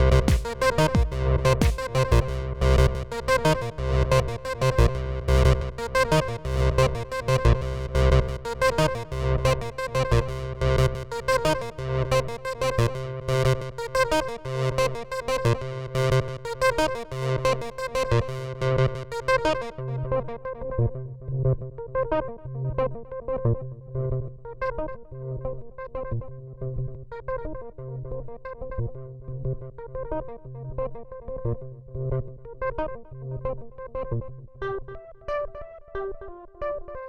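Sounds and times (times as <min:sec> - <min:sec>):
pulsing bass: 0:00.0 - 0:11.0
drum machine beat with hi-hats: 0:00.1 - 0:02.0.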